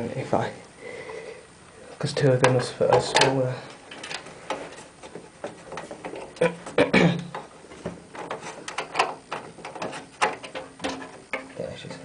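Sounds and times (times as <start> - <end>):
screws tapping on computer case: 2.5 - 11.6.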